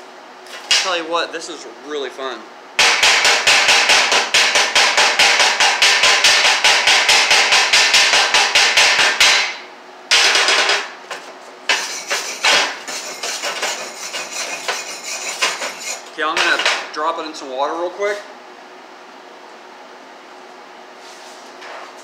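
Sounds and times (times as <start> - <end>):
hammer striking weld slag: 2.8 - 10.9, 11.7 - 16.9.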